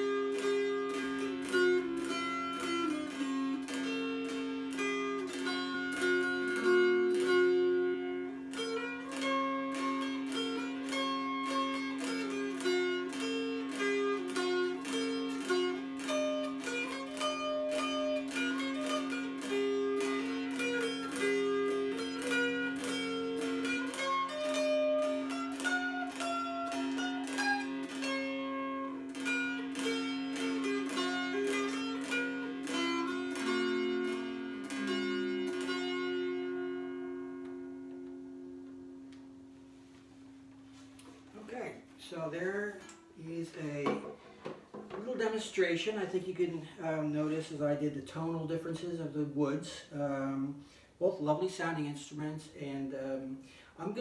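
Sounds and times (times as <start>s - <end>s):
strummed dulcimer tune: 0.0s - 50.4s.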